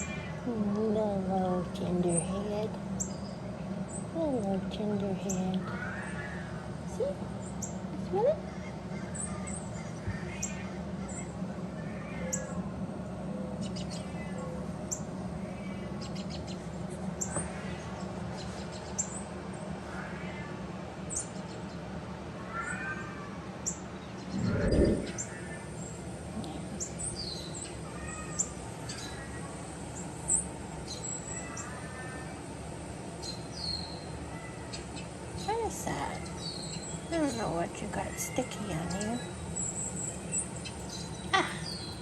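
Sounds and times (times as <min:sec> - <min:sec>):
steady low hum: 0:00.0 - 0:42.0
kittens mewing: 0:24.3 - 0:25.6.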